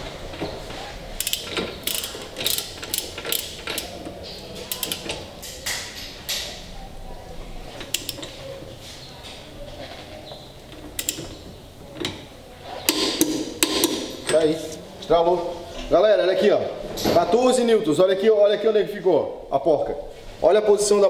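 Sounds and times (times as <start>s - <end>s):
ratcheting wrench clicking: 1.2s - 5.8s, 7.8s - 8.4s, 10.8s - 11.4s, 12.9s - 14.8s.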